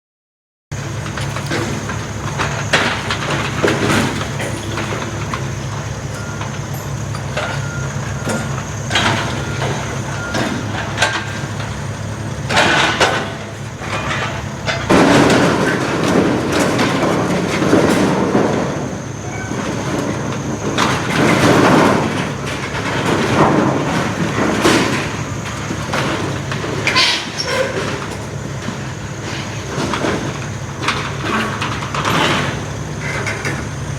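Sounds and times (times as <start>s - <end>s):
diesel engine running: 0.7s - 33.9s
debris crashing and scraping: 0.8s - 33.9s.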